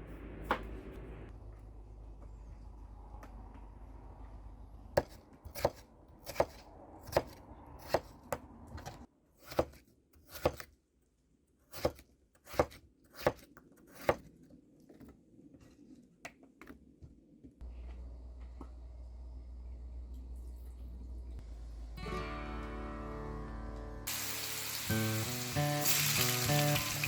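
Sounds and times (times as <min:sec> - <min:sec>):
knife chopping on cutting board: 0:08.8 - 0:10.7, 0:11.7 - 0:14.3.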